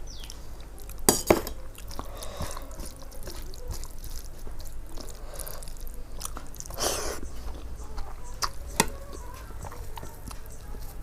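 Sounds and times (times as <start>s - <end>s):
soft eating sounds: 0.0s - 11.0s
tableware clinking: 1.1s - 1.6s.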